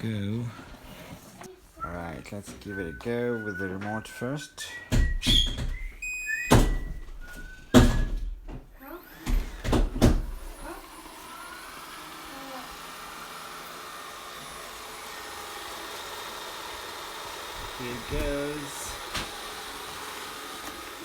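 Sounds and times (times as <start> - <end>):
knocks and thumps: 4.9 - 8.7, 9.3 - 10.5
robot vacuum fan whirring: 8.7 - 21.0.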